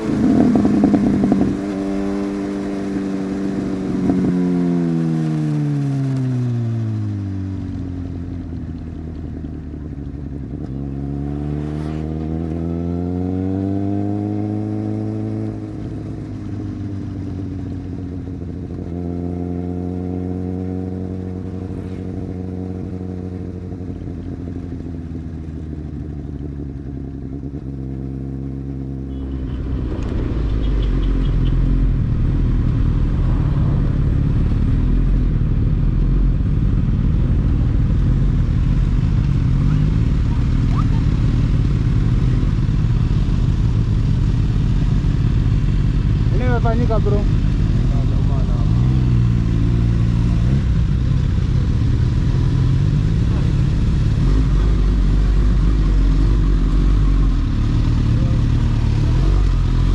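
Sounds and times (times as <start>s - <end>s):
loud low rumbling: 0.0s - 13.6s, 27.7s - 59.9s
motorcycle engine accelerating: 0.0s - 59.9s.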